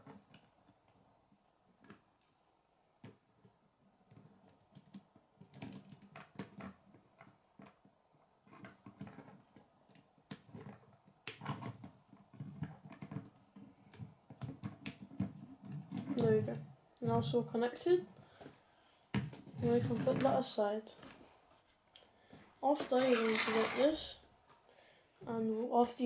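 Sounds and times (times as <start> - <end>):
plastic pieces clicking together: 22.9 - 24.0.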